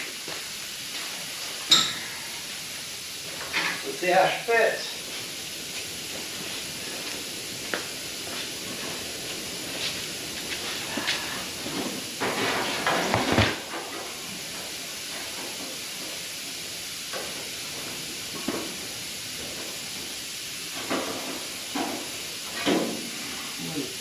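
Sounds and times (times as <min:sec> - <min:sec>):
steady hiss: 0:00.0 - 0:24.0.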